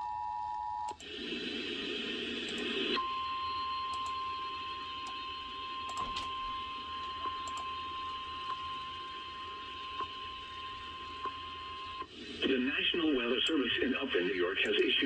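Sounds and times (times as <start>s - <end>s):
radio static hiss: 1.1s - 3.0s, 11.1s - 15.0s
steady radio alarm tone: 1.1s - 15.0s.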